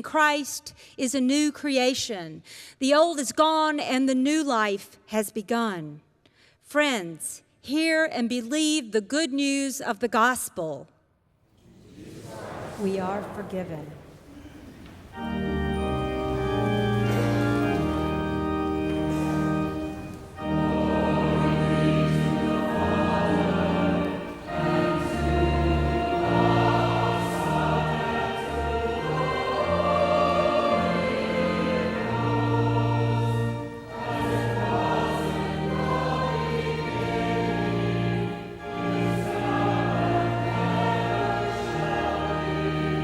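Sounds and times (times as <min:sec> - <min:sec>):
choir singing sustained chords: 0:11.6 - 0:43.0.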